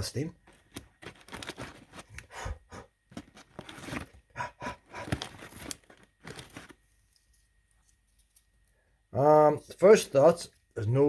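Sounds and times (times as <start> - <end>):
paper bag tearing and crinkling: 0.6 - 2.3, 3.1 - 6.8.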